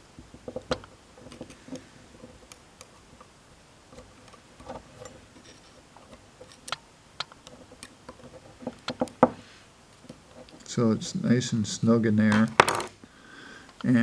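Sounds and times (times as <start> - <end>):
small metal parts clicking: 3.9 - 9.2.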